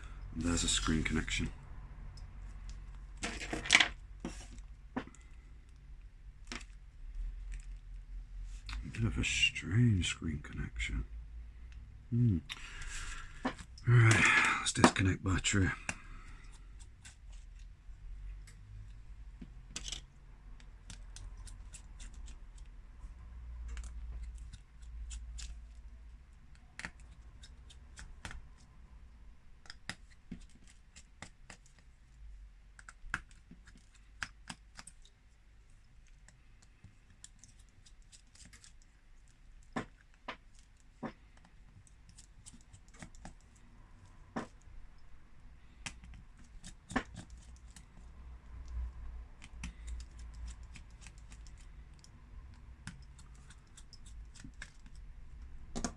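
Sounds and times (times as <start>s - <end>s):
low steady hum: 0.0s - 29.9s.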